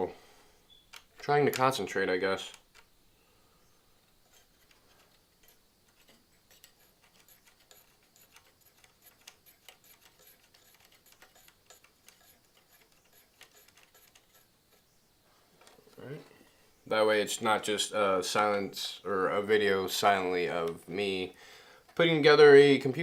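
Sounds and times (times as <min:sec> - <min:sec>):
screws and metal parts clicking: 0:04.2 - 0:15.0.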